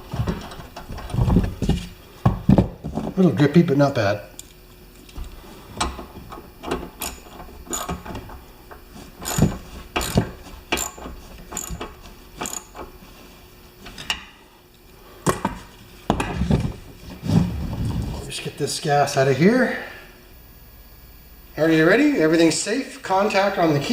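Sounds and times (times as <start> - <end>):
metallic clicks of hand tools: 7.0 - 8.0, 9.2 - 12.7.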